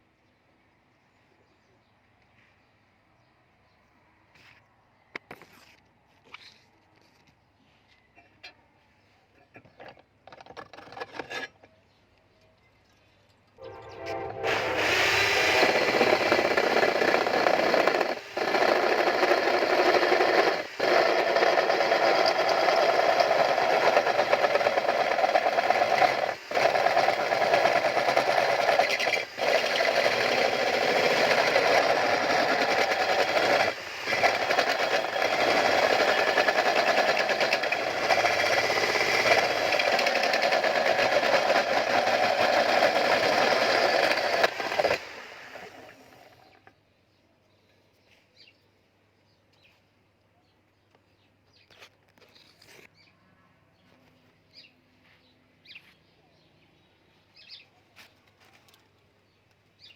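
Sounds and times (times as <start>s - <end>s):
power tool running: 13.8s - 46.6s.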